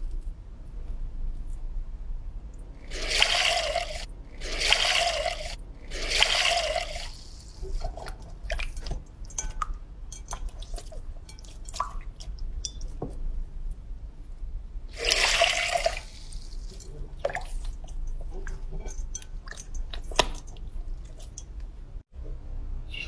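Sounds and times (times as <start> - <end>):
slime squelching: 2.8 - 9.6, 14.9 - 21.8.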